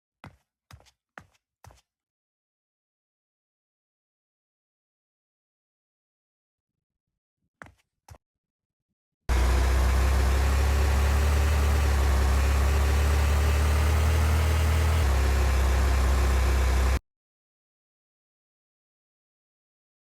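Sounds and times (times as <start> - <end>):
vehicle engine rumble: 9.3 - 17.0.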